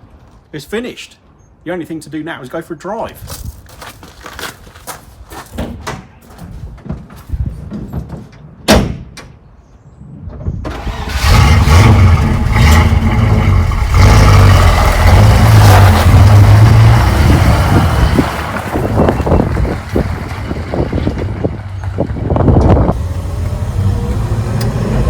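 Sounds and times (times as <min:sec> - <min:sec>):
engine cranking and revving: 0:10.7 - 0:25.0.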